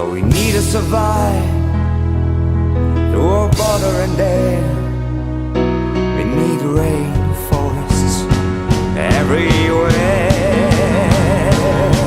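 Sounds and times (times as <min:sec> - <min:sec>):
pop-rock band music: 0:00.0 - 0:12.0
drum hits: 0:07.1 - 0:12.0.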